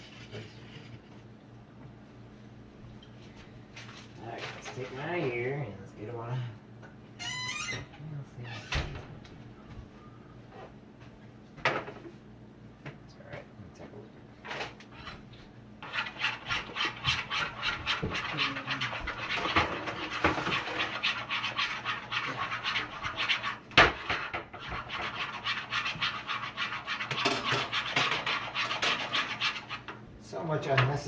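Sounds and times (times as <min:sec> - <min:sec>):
wet scraping of slime stirring: 0:14.7 - 0:30.0.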